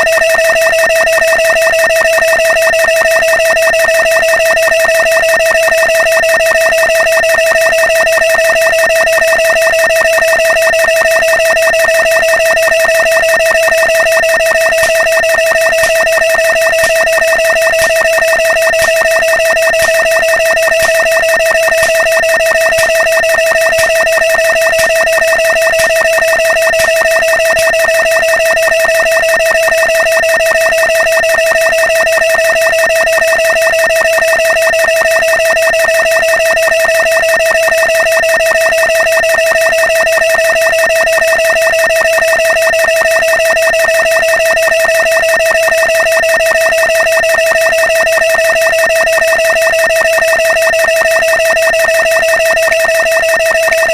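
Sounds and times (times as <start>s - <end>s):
electronic buzzing tone: 4.7s - 36.0s, 40.9s - 53.9s.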